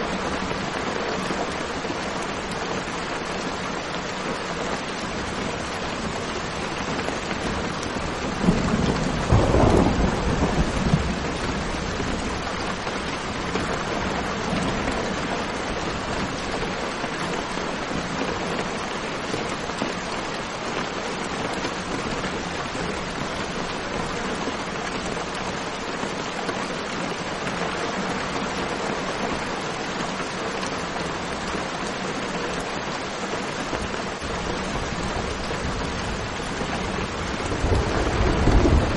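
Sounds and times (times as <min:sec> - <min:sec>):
steady rain falling: 0:00.0 - 0:38.9
thunder rumbling: 0:07.9 - 0:12.8, 0:34.8 - 0:38.9.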